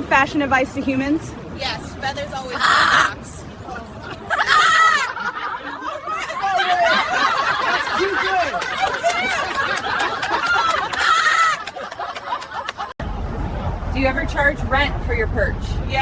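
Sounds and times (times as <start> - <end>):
laughter with high squeals: 4.0 - 12.9.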